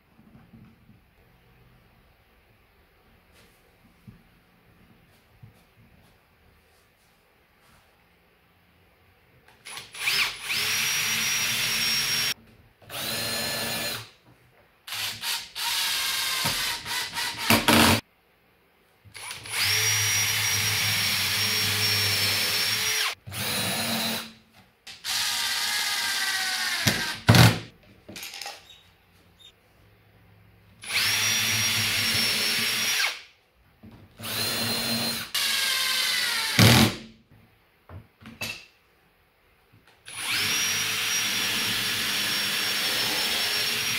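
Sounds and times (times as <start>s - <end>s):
electric drill whining: 9.7s - 14.1s, 19.2s - 24.3s, 30.8s - 33.2s, 34.2s - 36.8s, 40.1s - 43.9s.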